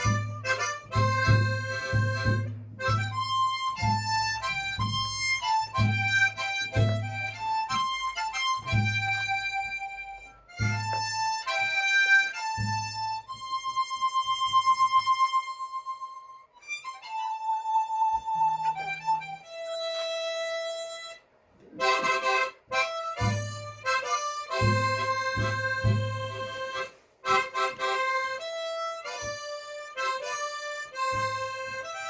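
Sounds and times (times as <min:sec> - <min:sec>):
backing track bass beat: 0:00.0 - 0:14.7, 0:21.6 - 0:32.0
harmonica melody: 0:00.0 - 0:32.0.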